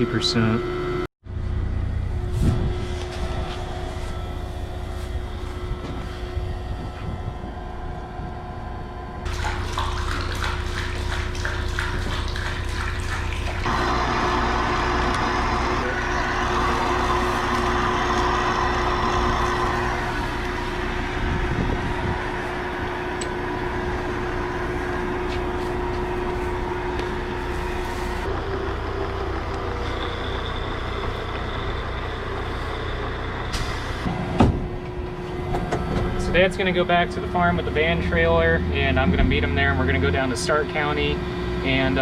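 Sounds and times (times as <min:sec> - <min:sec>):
irrigation pump humming: 0:00.0 - 0:42.0
water rushing: 0:09.3 - 0:20.8.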